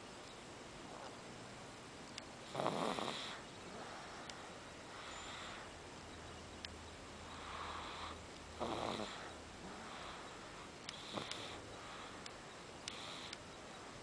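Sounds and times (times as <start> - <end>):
child snoring softly: 2.4 - 5.7, 7.3 - 12.3, 12.9 - 13.4.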